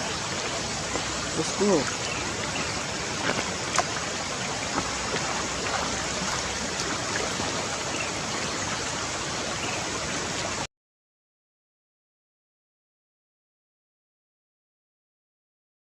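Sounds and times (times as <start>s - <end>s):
steady rushing water: 0.0s - 10.7s.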